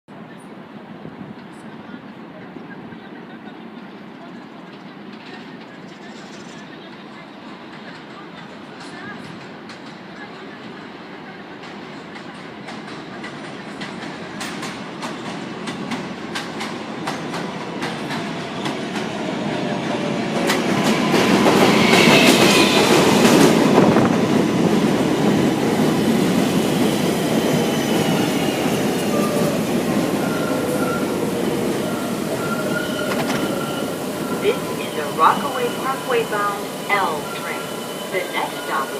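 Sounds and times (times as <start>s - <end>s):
train cars passing: 0.2s - 38.9s
train brakes squealing: 21.5s - 23.4s, 26.8s - 38.9s.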